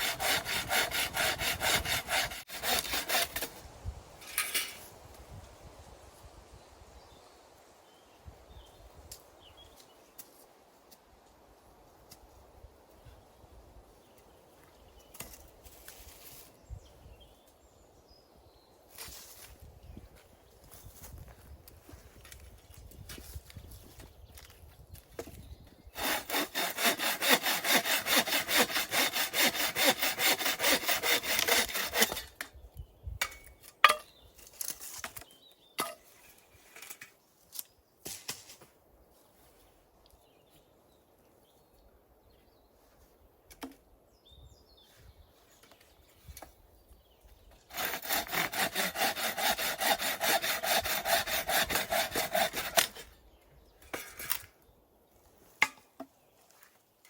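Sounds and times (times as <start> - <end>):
hand saw cutting wood: 0.0 - 3.6, 26.0 - 32.4, 47.7 - 53.2.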